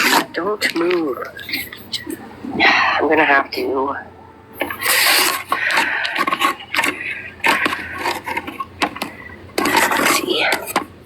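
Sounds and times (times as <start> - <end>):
hard objects knocking and scraping: 0.0 - 1.8, 4.6 - 11.0.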